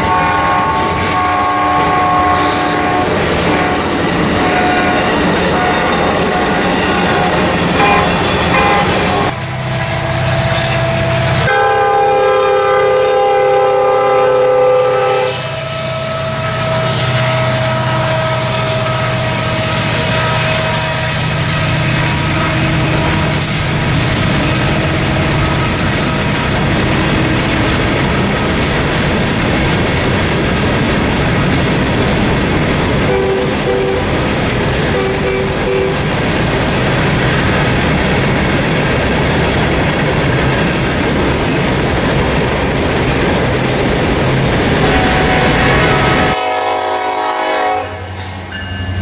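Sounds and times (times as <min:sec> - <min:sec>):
locomotive air horn chord: 0:00.0 - 0:23.8, 0:33.1 - 0:34.1, 0:34.9 - 0:36.0, 0:44.8 - 0:48.3
train rumbling over rails: 0:00.0 - 0:49.0.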